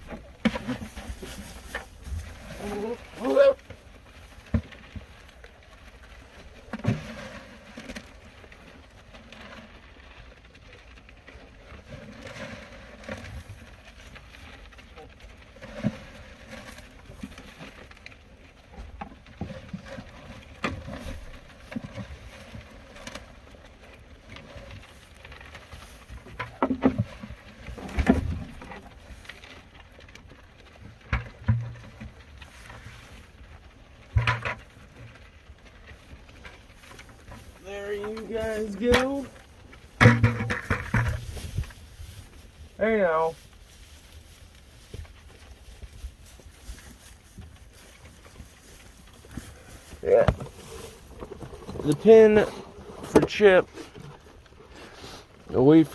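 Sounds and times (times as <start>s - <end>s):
faint background noise: 0.0s - 55.9s
knocks and thumps: 40.0s - 41.7s.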